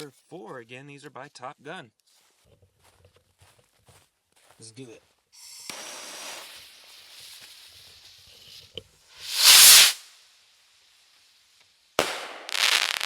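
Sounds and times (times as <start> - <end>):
firework rocket whoosh: 5.4 - 10.3
firework fuse hissing: 5.4 - 13.0.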